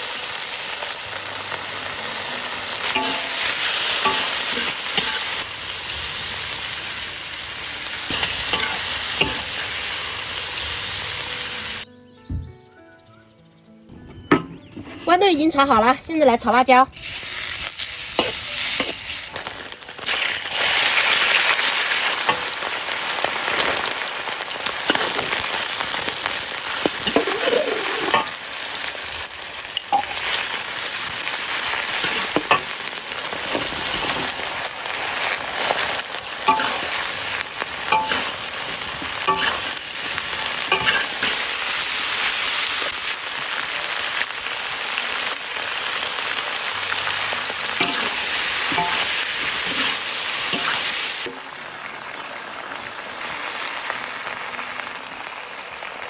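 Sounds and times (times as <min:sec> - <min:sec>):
peppers sizzling in hot oil: 0:00.0 - 0:11.9, 0:14.2 - 0:56.0
spatula scraping a pan: 0:36.5 - 0:39.8, 0:40.7 - 0:41.6, 0:47.8 - 0:51.0.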